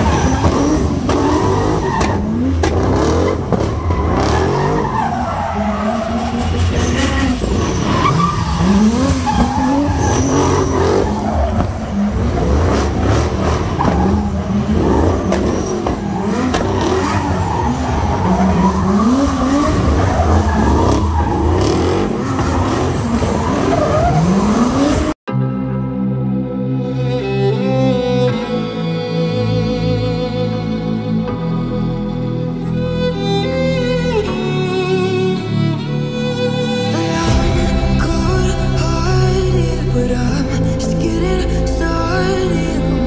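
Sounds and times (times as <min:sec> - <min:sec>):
string music: 0:00.0 - 0:24.4, 0:25.3 - 0:43.0
car engines revving hard: 0:00.0 - 0:25.2
tyres squealing and skidding: 0:00.0 - 0:25.2.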